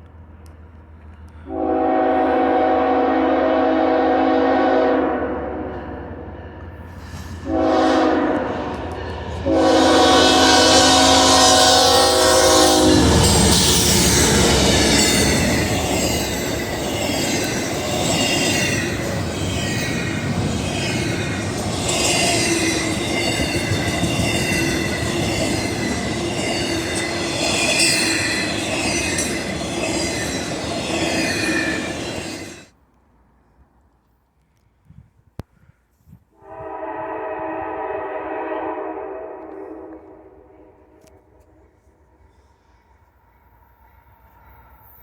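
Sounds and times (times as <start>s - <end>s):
freight train rumbling past: 0.0s - 32.8s, 36.4s - 45.0s
train horn blast: 1.4s - 5.8s, 7.4s - 32.6s, 36.4s - 41.9s
train wheels clattering and squealing: 5.7s - 7.5s, 10.4s - 32.7s.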